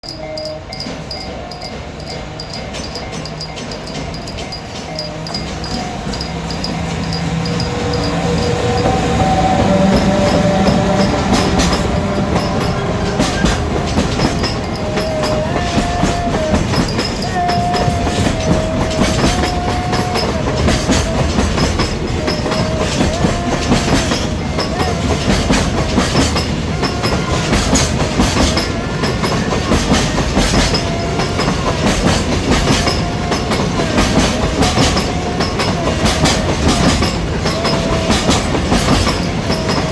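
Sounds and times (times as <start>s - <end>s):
handbell ringing: 0.0s - 9.3s, 9.9s - 39.9s
train wheels clicking over rail joints: 0.0s - 39.9s
wheel squeal: 0.0s - 39.9s.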